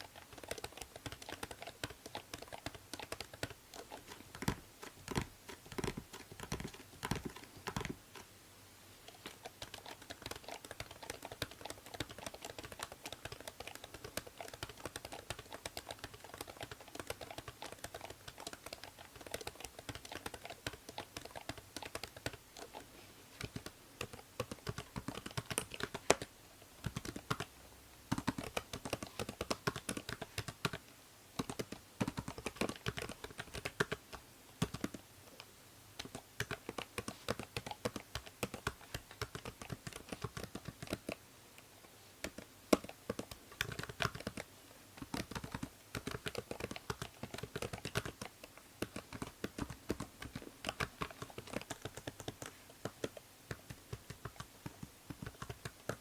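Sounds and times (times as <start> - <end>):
computer keyboard typing: 0.0 - 8.3, 9.1 - 27.5, 28.1 - 30.8, 31.4 - 41.2, 42.2 - 56.0
faint steady hiss: 0.0 - 56.0.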